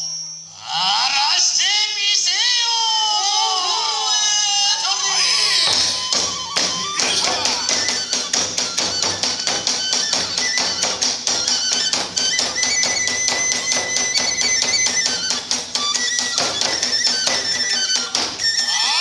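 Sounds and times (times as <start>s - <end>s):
bamboo flute playing: 4.8s - 19.0s
fast drum strokes: 5.0s - 19.0s
hand cymbal hits: 5.1s - 18.7s.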